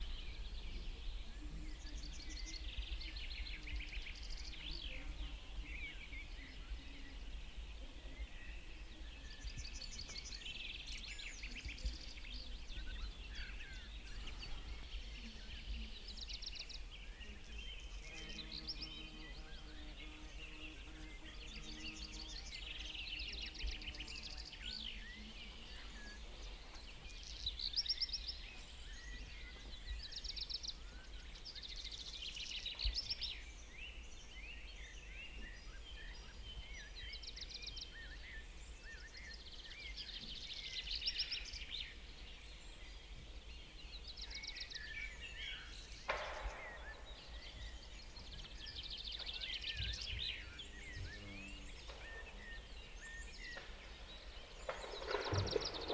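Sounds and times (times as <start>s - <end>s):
songbirds chirping and trilling: 0.0s - 55.9s.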